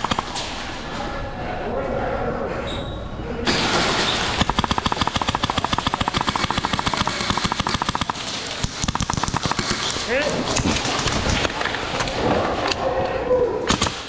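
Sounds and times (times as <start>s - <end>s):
airsoft rifle rapid fire: 0.0s - 0.7s, 3.5s - 11.5s, 13.7s - 14.0s.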